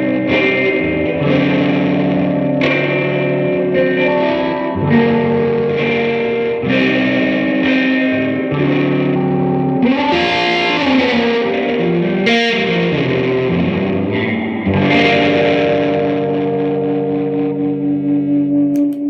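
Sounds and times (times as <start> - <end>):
distorted electric guitar chords: 0.0 - 19.0.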